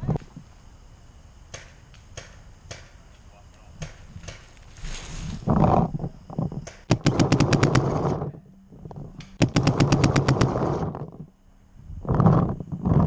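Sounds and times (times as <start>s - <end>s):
paintball marker firing rapidly: 6.7s - 8.3s, 9.3s - 11.3s.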